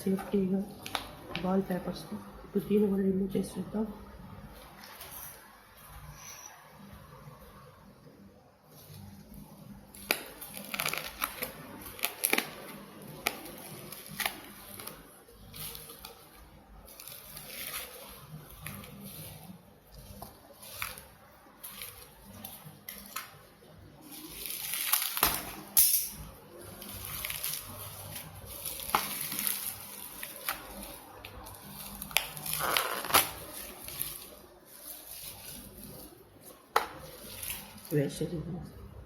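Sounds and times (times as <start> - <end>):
plastic and paper wrapping crinkling: 8.6 - 38.8.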